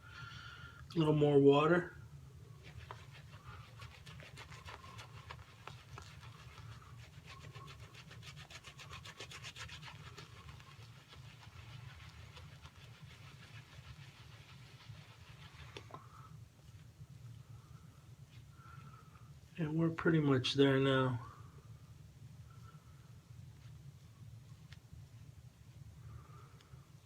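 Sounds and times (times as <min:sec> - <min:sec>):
shaving brush swishing lather: 0:02.4 - 0:16.4.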